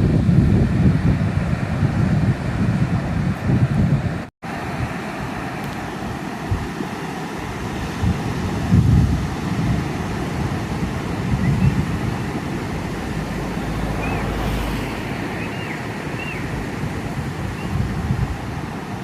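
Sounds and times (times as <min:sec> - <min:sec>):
sea surf washing: 0:00.0 - 0:19.0
wind rumbling on microphone: 0:00.0 - 0:19.0.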